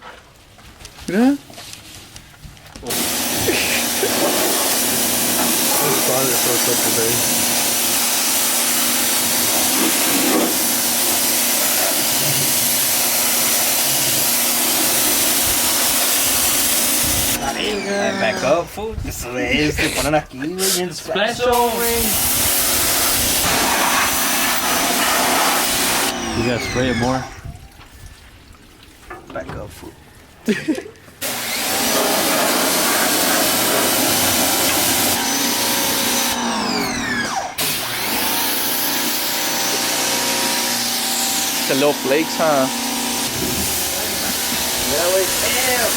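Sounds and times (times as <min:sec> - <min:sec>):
water spray hissing: 0:02.8 - 0:18.6, 0:20.6 - 0:27.4, 0:31.2 - 0:36.4, 0:37.5 - 0:45.9
pressure washer motor whine: 0:02.8 - 0:18.9, 0:21.5 - 0:27.4, 0:31.2 - 0:45.9.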